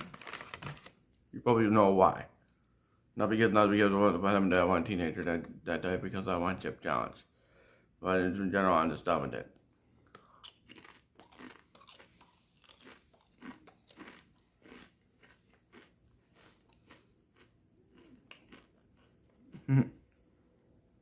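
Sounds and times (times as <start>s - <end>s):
person chewing crunchy chips: 0.0s - 0.9s, 10.0s - 19.8s.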